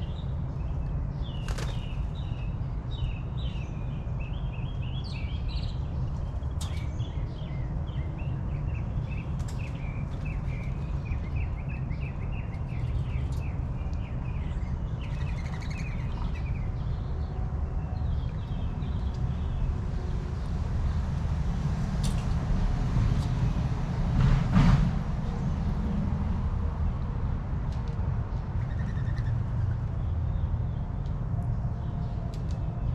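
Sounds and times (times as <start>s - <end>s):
small birds chirping: 0.0s - 21.0s, 27.9s - 32.9s.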